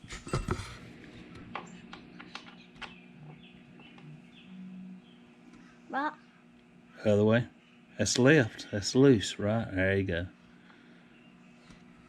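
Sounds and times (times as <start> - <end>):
brief low hums: 0.2 - 6.5.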